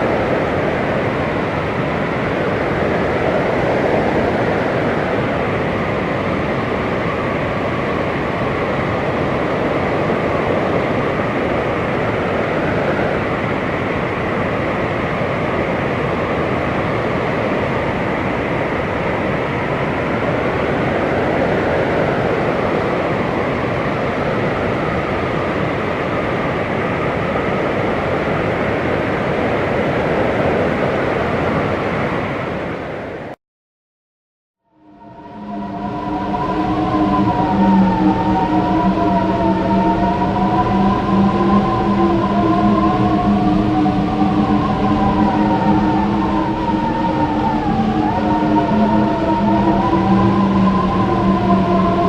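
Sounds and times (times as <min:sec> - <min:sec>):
blizzard wind blowing: 0:00.0 - 0:33.4, 0:34.7 - 0:52.0
faint wind whistling: 0:00.0 - 0:33.4, 0:34.6 - 0:52.0.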